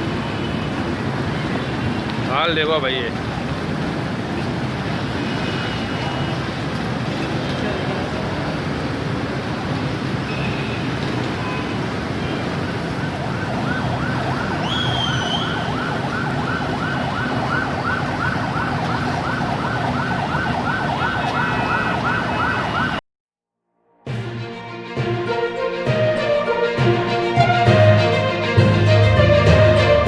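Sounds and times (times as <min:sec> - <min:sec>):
street traffic: 0:00.0 - 0:23.0, 0:25.0 - 0:30.0
siren yelping: 0:12.8 - 0:23.0.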